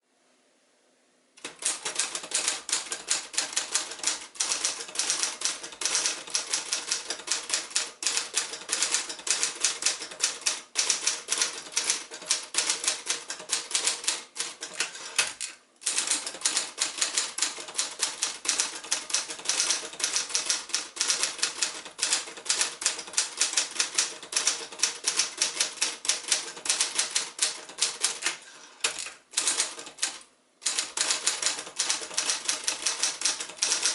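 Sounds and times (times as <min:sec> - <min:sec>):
typewriter key strikes: 0:01.4 - 0:33.9.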